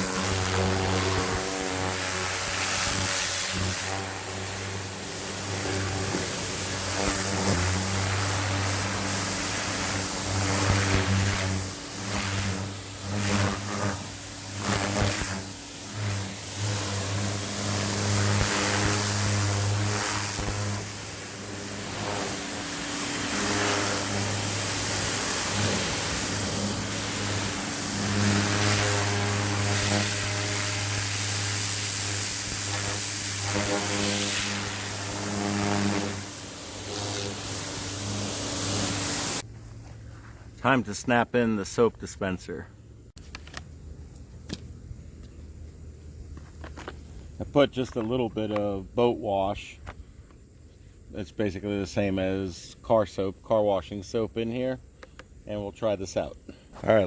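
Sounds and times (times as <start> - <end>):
hissing water spray: 0.0 - 39.4
pressure washer motor humming: 0.0 - 39.4.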